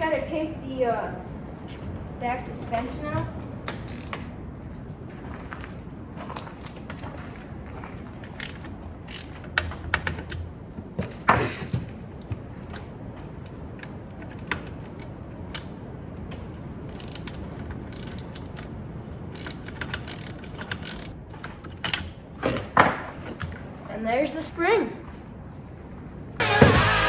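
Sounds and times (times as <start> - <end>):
hand tools clicking and knocking: 8.2 - 22.9
loud metal clank: 26.4 - 27.0.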